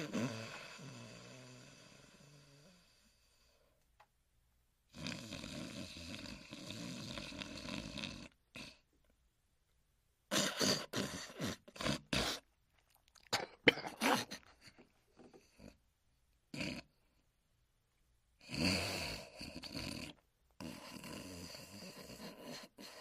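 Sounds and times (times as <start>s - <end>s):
person snoring: 0.0s - 3.6s, 4.9s - 8.8s, 16.5s - 17.0s, 18.4s - 23.0s
snorts and sputtering throat noises: 4.9s - 8.8s, 10.3s - 15.8s, 16.5s - 17.0s, 18.4s - 23.0s.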